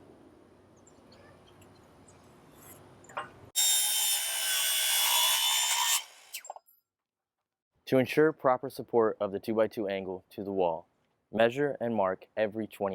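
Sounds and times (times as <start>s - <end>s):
power saw cutting metal: 3.6s - 6.5s.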